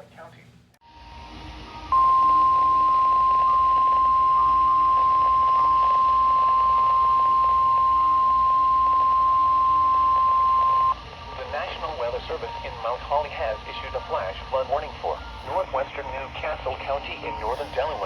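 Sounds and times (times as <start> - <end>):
steady warning alarm tone: 0.9 - 11.0
radio hiss: 1.0 - 18.0.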